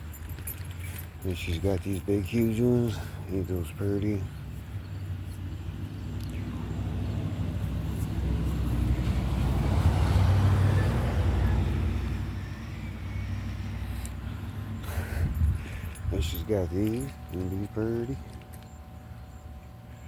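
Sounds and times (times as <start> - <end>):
car driving past: 5.4 - 14.8.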